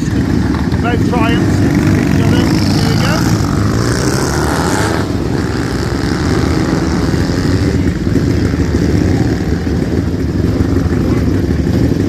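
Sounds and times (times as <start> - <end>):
motorcycles revving hard: 0.0 - 12.0.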